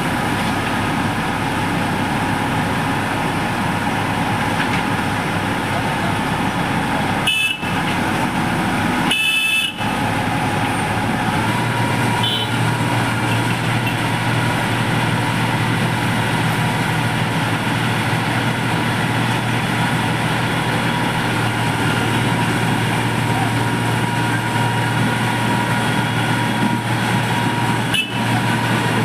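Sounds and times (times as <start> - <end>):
low engine hum: 0.0 - 29.0
paving machinery running: 0.0 - 29.0
horn toots: 7.2 - 7.8, 9.1 - 9.9, 12.2 - 12.6.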